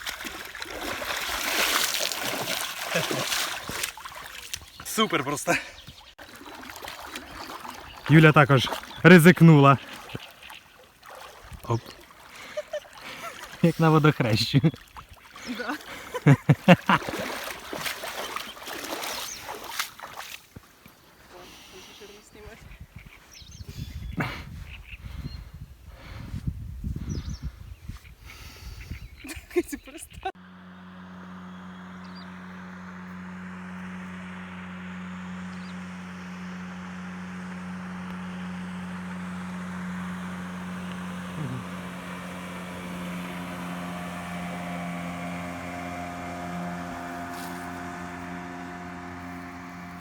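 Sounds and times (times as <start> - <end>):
water splashing: 0.0 - 20.9, 39.0 - 50.0
motor humming: 30.4 - 50.0.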